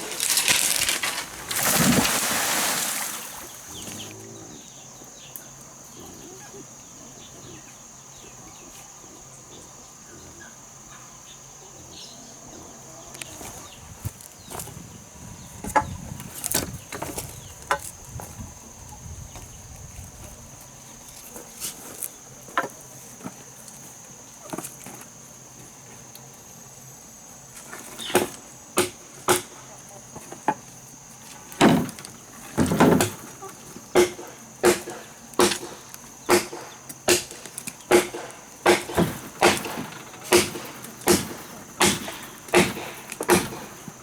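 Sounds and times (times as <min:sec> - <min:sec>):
insects droning: 0:00.0 - 0:44.0
wood knocking and clattering: 0:31.6 - 0:33.3.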